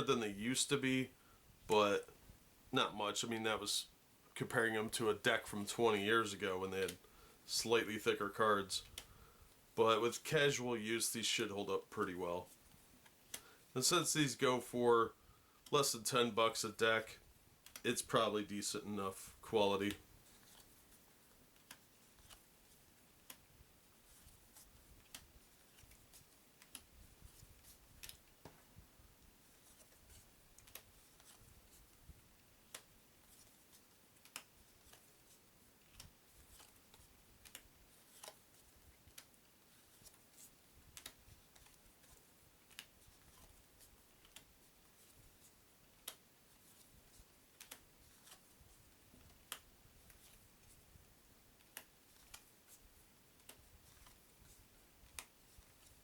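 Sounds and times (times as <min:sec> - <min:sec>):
playing cards clicking: 0:29.6 - 0:31.9, 0:32.6 - 0:33.5, 0:35.9 - 0:40.2, 0:40.9 - 0:43.5, 0:47.5 - 0:48.4.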